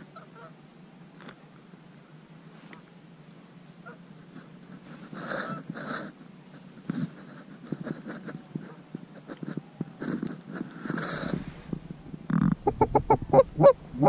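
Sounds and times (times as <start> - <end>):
goose honks: 0.1 - 0.6, 3.8 - 4.4, 5.0 - 6.1.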